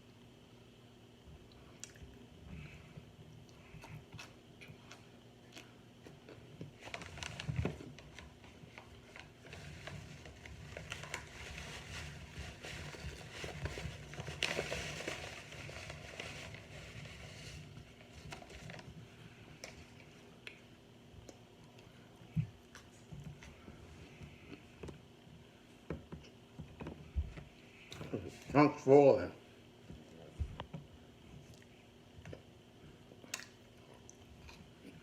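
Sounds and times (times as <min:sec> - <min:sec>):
crunching and chewing: 0:03.3 - 0:17.0, 0:33.1 - 0:35.0.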